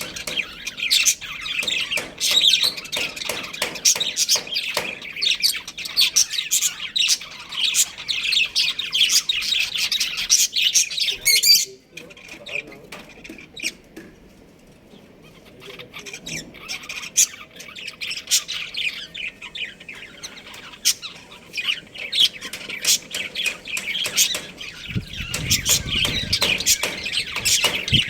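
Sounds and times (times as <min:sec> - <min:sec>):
budgerigars chirping and chattering: 0:00.0 - 0:28.0.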